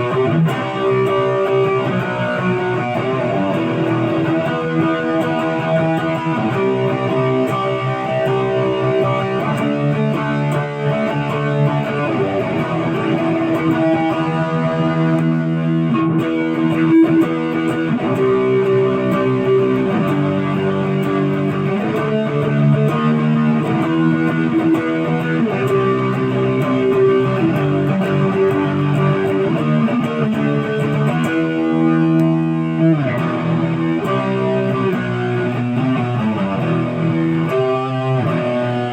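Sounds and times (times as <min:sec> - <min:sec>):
electric guitar notes and chords: 0:00.0 - 0:38.9.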